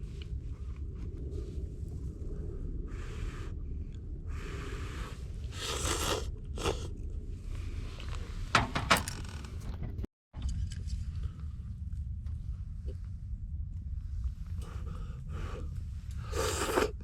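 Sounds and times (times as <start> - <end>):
steady low rumble: 0.0 - 17.0
person eating and chewing: 5.5 - 7.0, 16.2 - 17.0.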